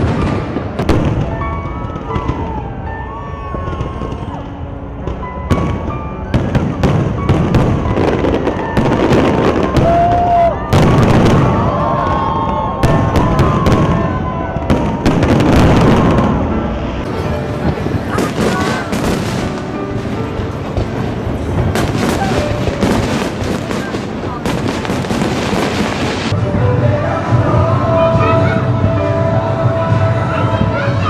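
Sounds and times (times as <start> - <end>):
fireworks bangs and crackles: 0.0 - 31.0
whistling tones: 1.3 - 4.6.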